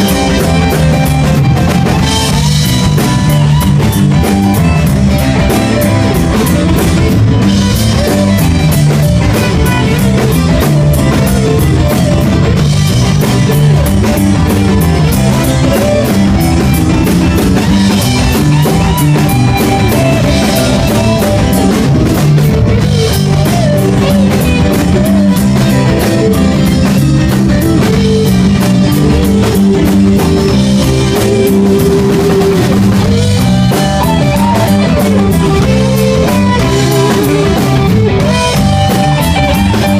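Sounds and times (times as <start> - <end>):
drum kit beat: 0.0 - 39.9
electric guitars: 0.0 - 39.9
rock band playing live: 0.0 - 39.9.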